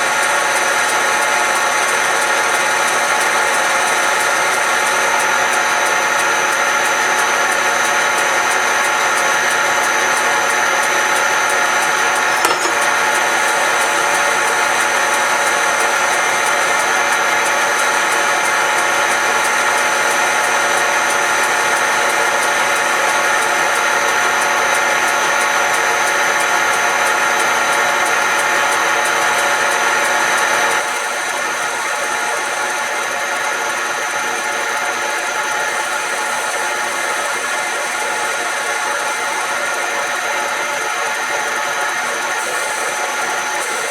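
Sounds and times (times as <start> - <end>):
metal lathe whining: 31.8 - 43.9.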